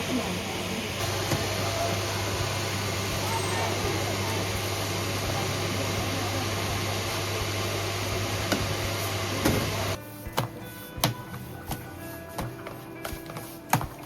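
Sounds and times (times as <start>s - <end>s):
mechanical hum with low drone: 0.0s - 10.0s.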